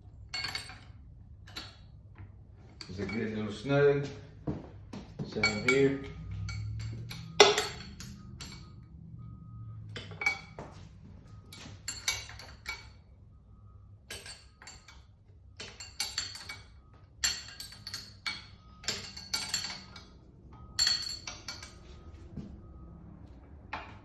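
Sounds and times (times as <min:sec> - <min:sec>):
wrench clinking on steel: 0:00.2 - 0:03.8, 0:05.2 - 0:09.1, 0:09.8 - 0:10.7, 0:11.3 - 0:13.1, 0:14.0 - 0:22.4.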